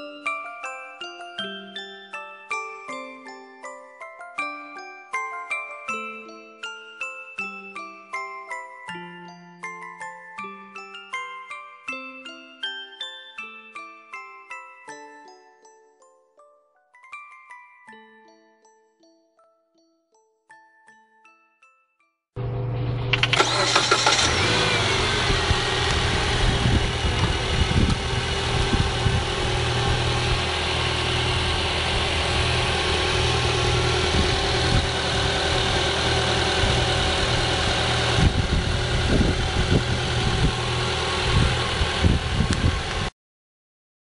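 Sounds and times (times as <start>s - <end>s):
car engine starting and idling: 22.4s - 43.1s.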